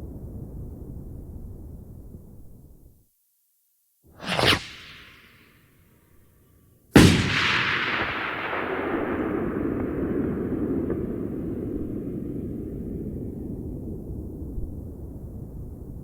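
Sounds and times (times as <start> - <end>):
loud bang: 4.2 - 5.5, 7.0 - 11.4
rocket blast with hissing tail: 4.2 - 5.6, 7.0 - 14.2.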